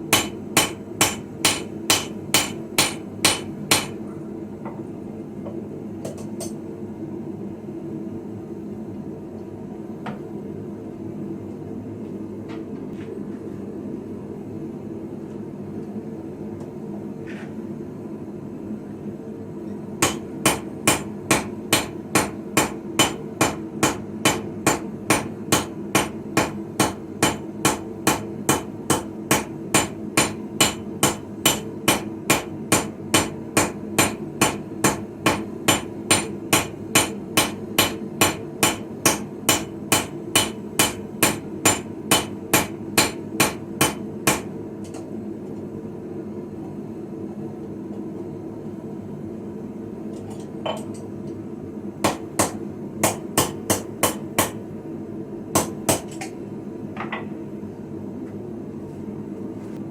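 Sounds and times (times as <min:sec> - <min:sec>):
steady low hum: 0:00.0 - 0:59.9
hammer striking steel on anvil: 0:00.1 - 0:04.0, 0:20.0 - 0:45.0, 0:52.0 - 0:54.6, 0:55.6 - 0:56.3.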